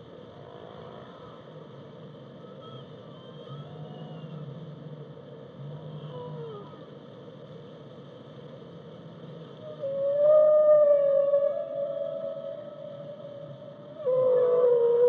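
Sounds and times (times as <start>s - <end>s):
low underwater hum: 0.0s - 15.0s
whale calls gliding in pitch: 9.6s - 15.0s.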